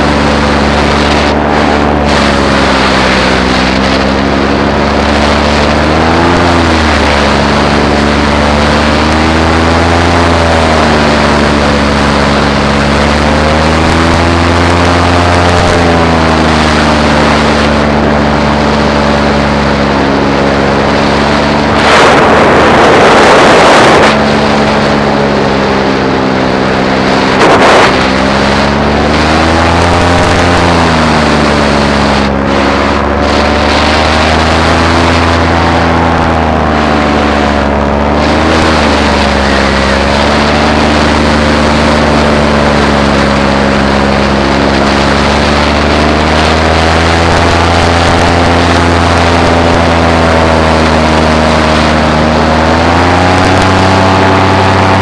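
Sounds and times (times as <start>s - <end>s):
paramotor engine and propeller: 0.0s - 55.0s
wind buffeting microphone: 15.4s - 55.0s.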